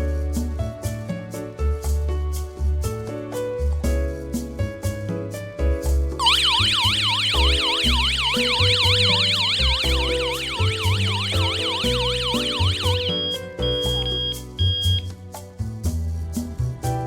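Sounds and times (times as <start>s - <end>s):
warbling electronic alarm siren: 6.2s - 14.1s.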